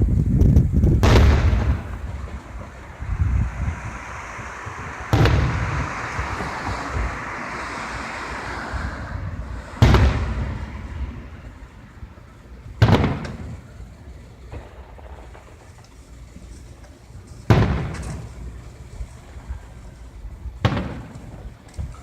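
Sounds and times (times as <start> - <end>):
low rumble after booms: 0.0 - 7.3, 9.0 - 12.0, 14.4 - 15.9, 17.5 - 22.0
fireworks booming: 0.0 - 22.0
rushing hiss of fireworks: 0.0 - 22.0.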